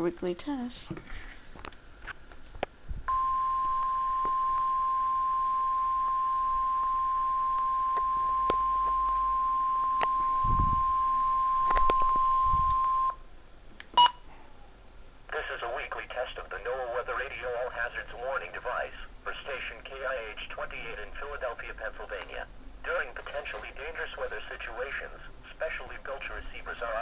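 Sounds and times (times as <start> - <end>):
static clicks: 1.6 - 4.8, 5.6 - 10.4, 11.6 - 13.1
short beep: 3.1 - 13.2, 14.0 - 14.2
weather radio alarm tone: 3.1 - 13.2.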